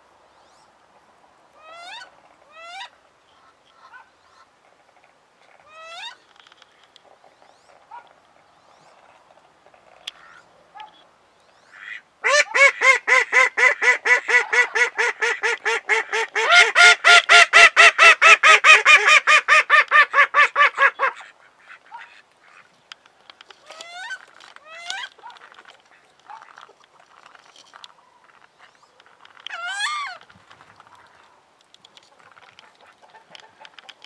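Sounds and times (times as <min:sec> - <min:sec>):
ducks quacking: 0:32.2 - 0:33.8.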